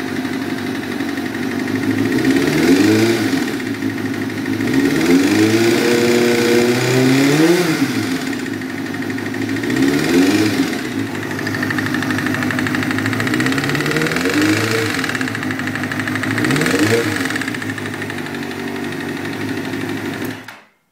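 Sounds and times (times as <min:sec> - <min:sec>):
motorcycle engine idling and revving: 0:00.0 - 0:20.6.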